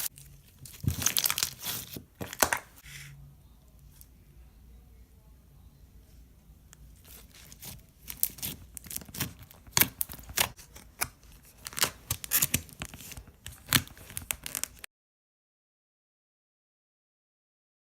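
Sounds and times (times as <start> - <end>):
slime being squeezed crackling: 7.1 - 10.6, 11.6 - 14.8.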